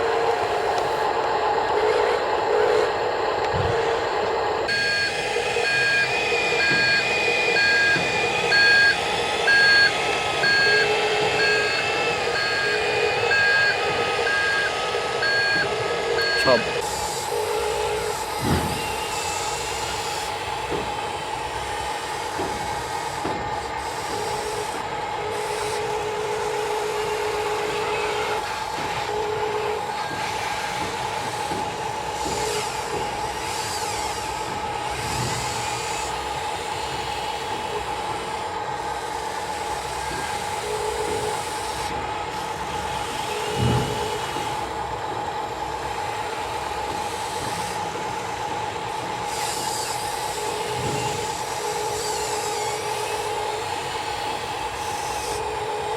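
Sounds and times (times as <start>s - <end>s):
beeping: 4.7s - 16.8s.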